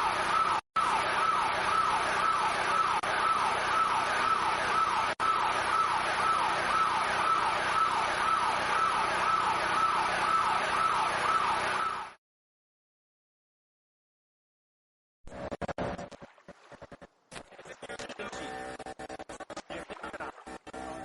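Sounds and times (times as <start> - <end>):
siren wailing in falling sweeps: 0.0 - 12.2.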